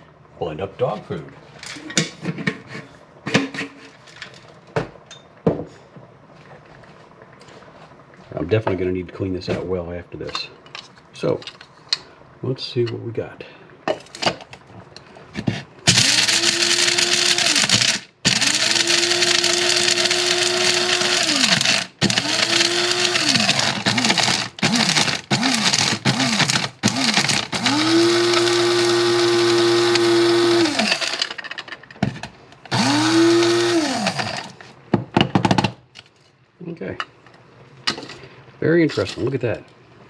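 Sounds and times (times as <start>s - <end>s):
coffee grinder motor whining: 15.9s - 31.4s, 32.7s - 34.6s.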